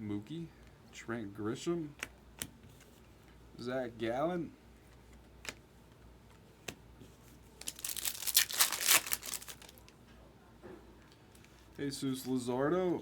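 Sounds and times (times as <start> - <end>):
plastic packaging crinkling and tearing: 7.6 - 10.0.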